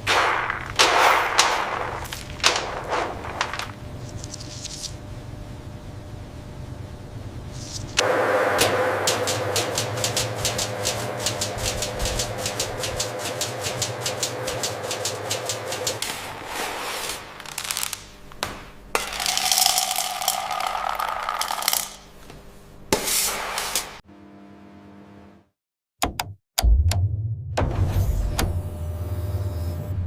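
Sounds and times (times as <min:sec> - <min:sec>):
machinery clattering: 0:00.0 - 0:04.4, 0:07.9 - 0:16.4
fast run of clicks: 0:09.1 - 0:16.0.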